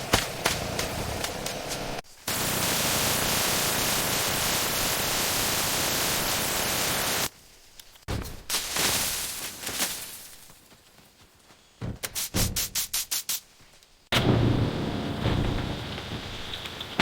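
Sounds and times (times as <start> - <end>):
loud steady hiss: 0.0 - 7.3.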